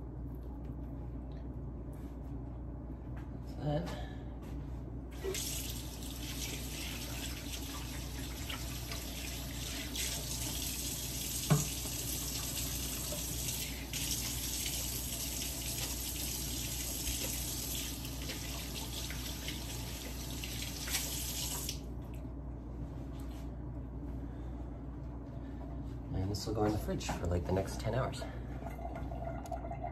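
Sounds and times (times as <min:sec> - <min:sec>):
tap water running into sink: 0:05.2 - 0:21.8.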